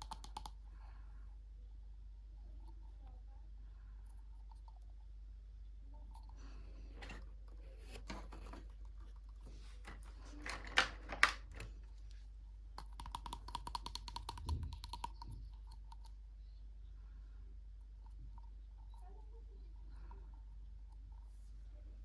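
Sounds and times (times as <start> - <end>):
plastic toy pieces tapping: 12.8 - 16.0
rapid ticking: 12.8 - 16.1.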